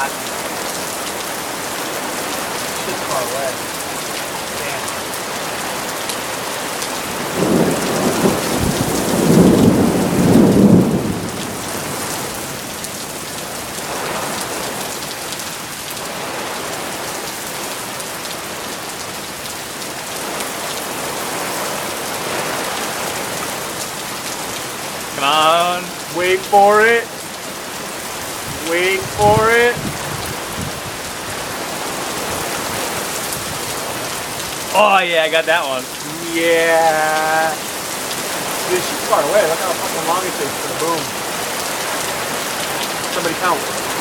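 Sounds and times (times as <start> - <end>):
rain falling: 0.0 - 44.0
distant thunder rumble: 7.1 - 12.7.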